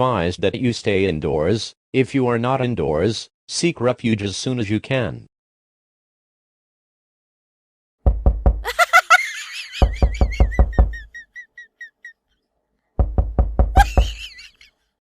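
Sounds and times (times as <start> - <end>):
rapid deep knocking: 8.0 - 8.7, 9.8 - 11.0, 13.0 - 14.2.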